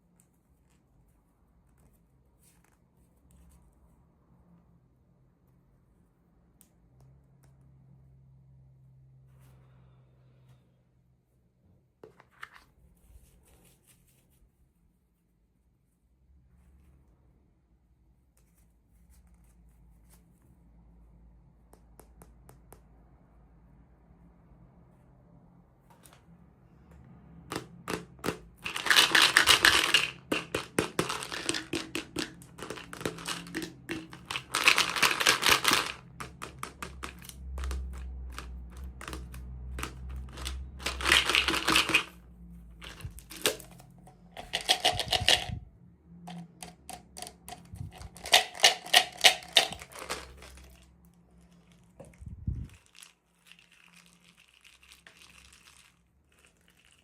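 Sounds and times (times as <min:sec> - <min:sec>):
plastic packaging crinkling: 0:28.6 - 0:37.9, 0:40.2 - 0:42.2, 0:47.8 - 0:52.1
rapid clicks of plastic packaging: 0:28.6 - 0:42.1, 0:46.3 - 0:50.9.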